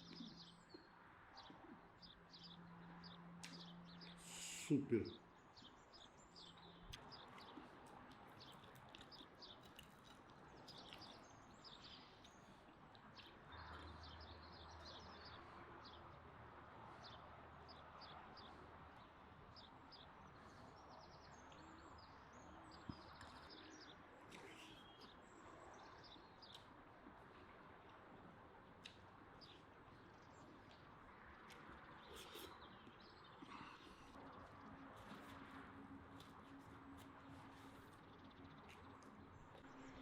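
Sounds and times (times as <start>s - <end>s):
bird chirps: 22.7s - 25.2s.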